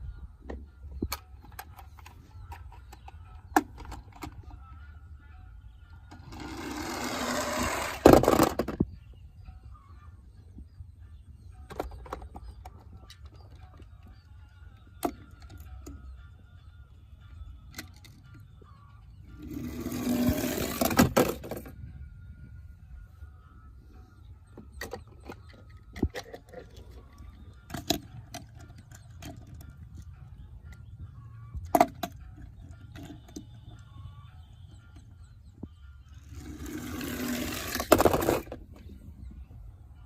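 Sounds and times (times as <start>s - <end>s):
toy cars clicking and clinking: 6.1s - 8.9s, 24.7s - 30.9s, 36.2s - 38.9s
toy cars rattling: 6.2s - 8.9s, 19.3s - 21.7s, 24.7s - 30.1s, 36.2s - 38.8s.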